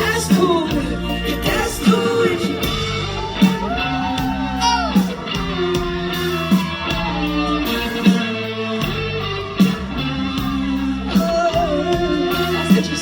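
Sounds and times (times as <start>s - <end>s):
live band with guitar: 0.0s - 13.0s
strong drum hits: 1.5s - 10.8s.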